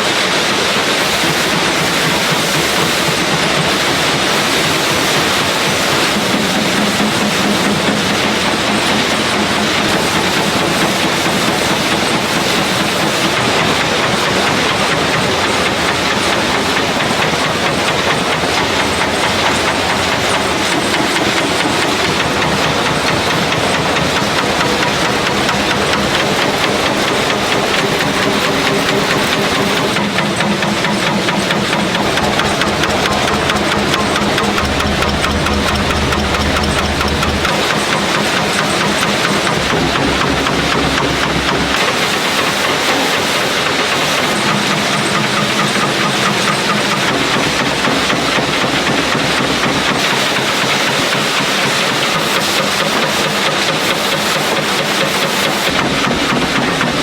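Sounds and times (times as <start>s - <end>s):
factory machinery clattering: 0.0s - 57.0s
low machine hum: 13.2s - 43.1s.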